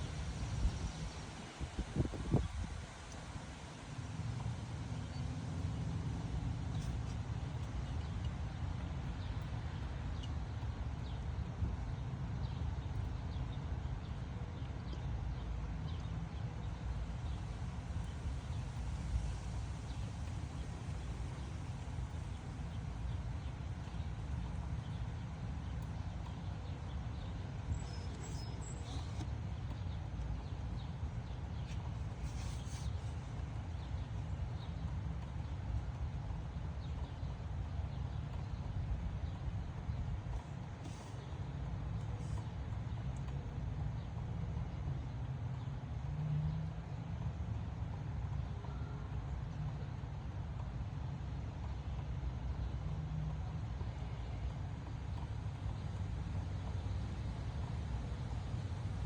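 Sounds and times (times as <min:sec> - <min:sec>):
gusty wind buffeting microphone: 0:00.0 - 0:09.0.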